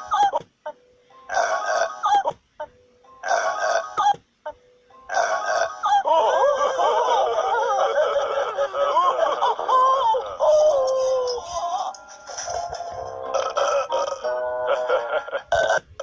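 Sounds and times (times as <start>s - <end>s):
cartoon voices laughing and squealing: 5.1s - 11.9s.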